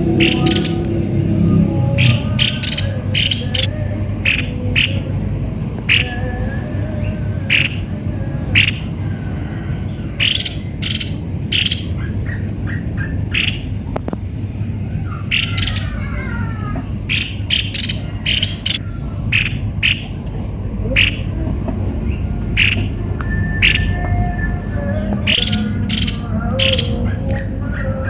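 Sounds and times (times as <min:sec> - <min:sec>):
bird calling sharp notes: 0:00.0 - 0:14.0, 0:14.6 - 0:28.0
steady low hum: 0:00.0 - 0:28.0.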